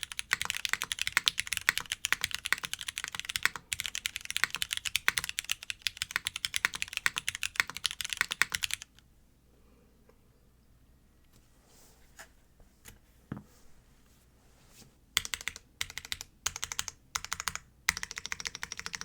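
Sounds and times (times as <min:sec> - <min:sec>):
fast typing on mechanical keyboard: 0:00.0 - 0:09.0, 0:15.2 - 0:19.0.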